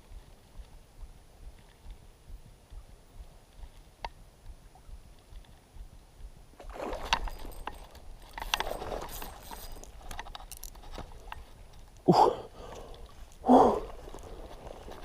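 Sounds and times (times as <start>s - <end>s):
low wind rumble: 0.0s - 15.0s
water splashing: 6.6s - 15.0s.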